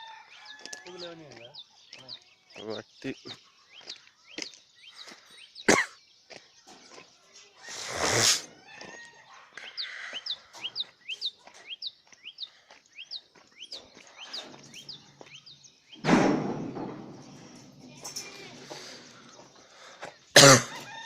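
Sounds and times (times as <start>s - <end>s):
small bird chirping: 0.4s - 16.1s.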